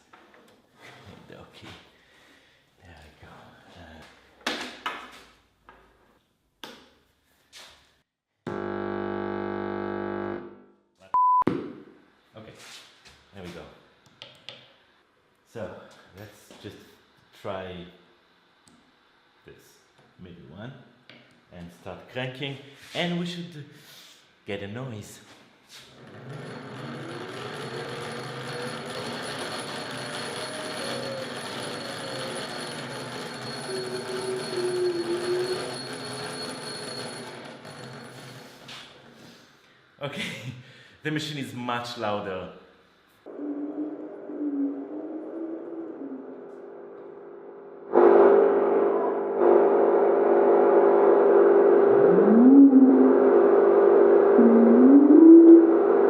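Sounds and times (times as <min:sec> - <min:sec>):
held organ-like tone: 0:48.0 - 0:56.0.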